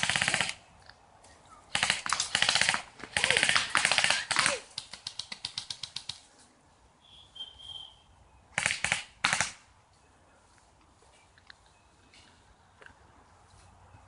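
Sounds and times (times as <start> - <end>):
airsoft rifle rapid shots: 0.0 - 0.6, 1.7 - 6.2, 8.6 - 9.6.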